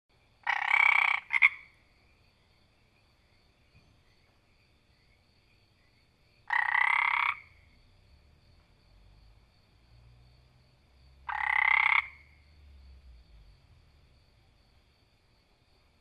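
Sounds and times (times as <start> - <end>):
frog croaking: 0.4 - 1.9, 5.8 - 8.0, 11.0 - 13.3.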